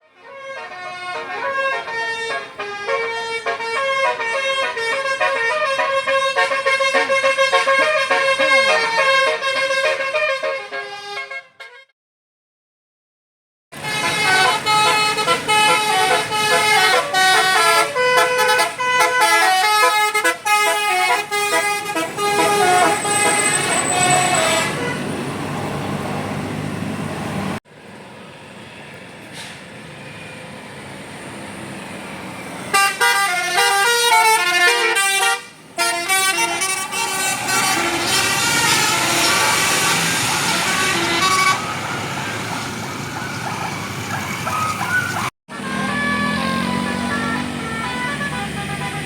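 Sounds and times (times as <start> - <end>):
engine and road noise: 0.0 - 11.9, 13.7 - 49.0
musical air horn tune: 0.0 - 11.9, 13.8 - 25.2, 32.7 - 41.9, 45.5 - 49.0.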